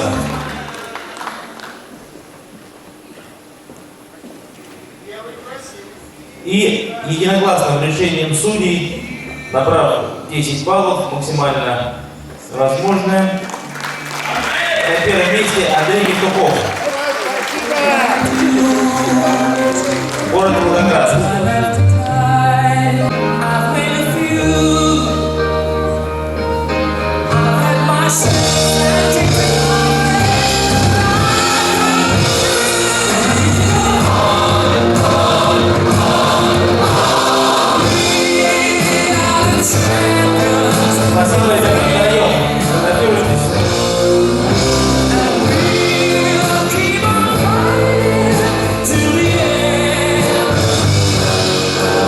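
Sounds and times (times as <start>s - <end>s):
pop music with singing: 0.0s - 0.6s, 17.6s - 26.0s, 27.2s - 52.0s
song with held bass notes: 18.4s - 52.0s.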